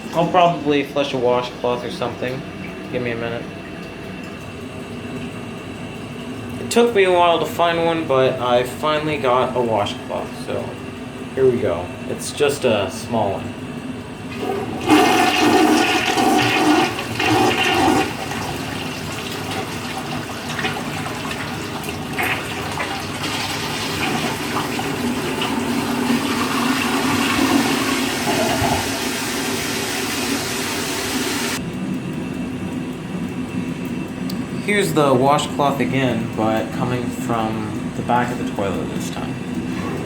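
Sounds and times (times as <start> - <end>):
toilet flushing: 14.2 - 31.6
hiss of refilling water: 21.7 - 31.6.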